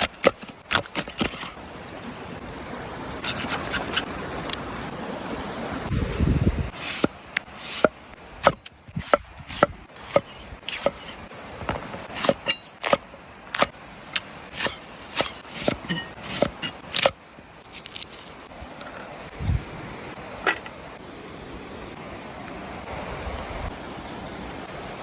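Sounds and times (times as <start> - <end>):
knife chopping on wooden board: 7.7 - 11.1.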